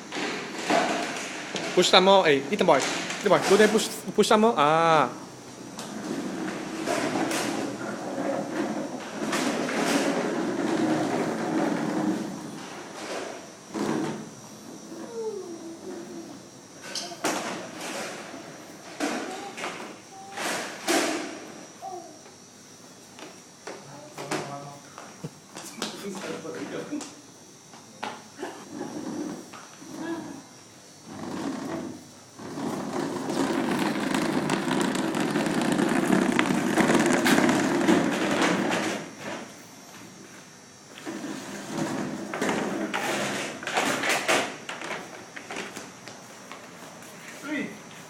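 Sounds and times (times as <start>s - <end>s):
chairs knocking and scraping: 2.6s - 4.1s, 5.8s - 14.3s, 31.1s - 39.5s, 41.0s - 45.9s.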